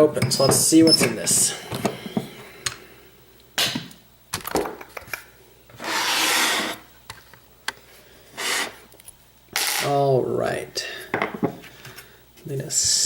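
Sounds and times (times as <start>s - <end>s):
tool scraping: 5.8s - 6.9s, 8.4s - 8.8s.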